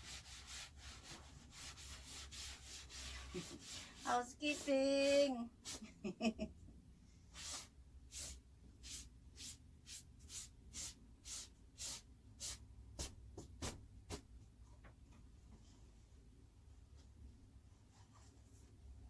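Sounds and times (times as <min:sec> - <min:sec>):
hissing cleaning scrapes: 0:00.0 - 0:05.9, 0:07.4 - 0:12.6.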